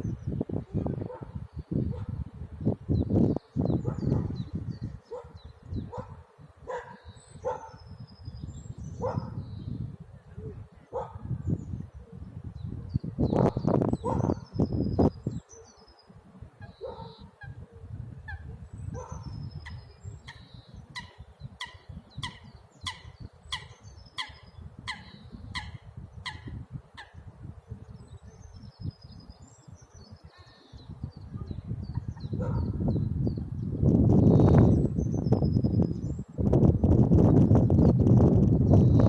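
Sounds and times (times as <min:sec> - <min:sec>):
wind buffeting microphone: 0:00.0 - 0:39.0
small birds chirping: 0:02.9 - 0:09.9, 0:10.8 - 0:17.7, 0:18.3 - 0:27.2, 0:27.8 - 0:36.3
bird harsh calls: 0:16.6 - 0:17.7, 0:18.3 - 0:27.2.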